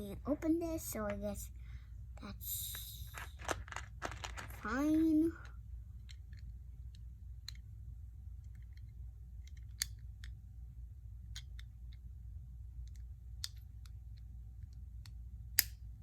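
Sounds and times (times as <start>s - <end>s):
steady low hum: 0.0s - 16.0s
plastic pieces clicking and snapping: 3.1s - 4.9s.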